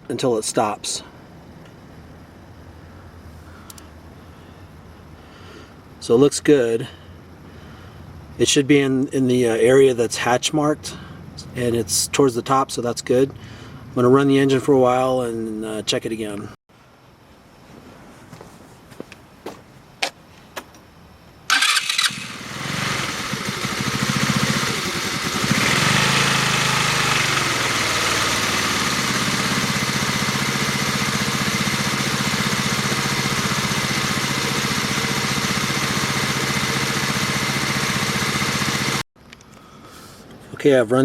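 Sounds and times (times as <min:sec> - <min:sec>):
sharp clicks: 0:03.7 - 0:03.9
scooter engine revving and idling: 0:21.5 - 0:39.0.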